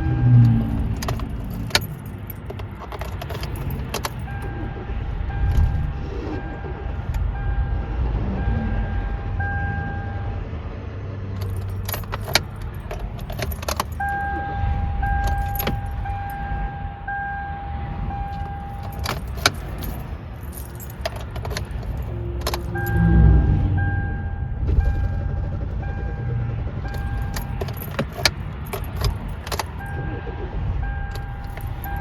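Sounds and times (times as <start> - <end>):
car keys jangling: 0.0 - 7.3, 11.3 - 16.8, 18.2 - 23.4, 24.7 - 25.3, 26.8 - 32.0
dashboard warning chime: 0.0 - 10.3, 11.4 - 32.0
low rumble: 11.4 - 32.0.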